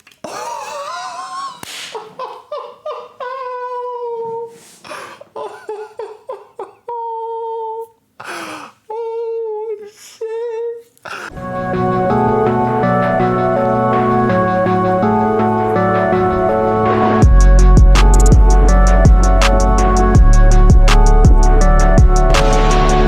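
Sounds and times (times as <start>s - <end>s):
breathy bursts: 4.0s - 7.1s, 8.2s - 11.4s
music: 11.3s - 23.0s.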